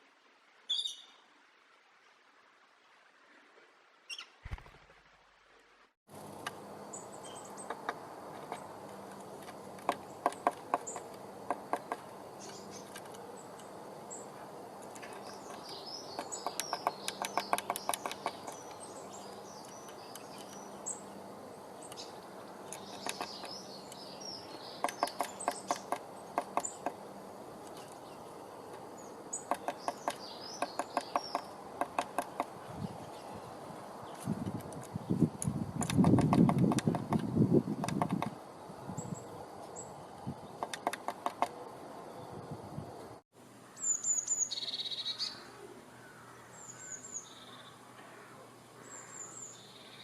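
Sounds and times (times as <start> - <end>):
bird pecking wood: 7.6 - 13.8, 14.8 - 20.7, 22.6 - 24.0, 24.8 - 27.0, 28.6 - 32.6, 34.4 - 38.4, 40.6 - 41.6.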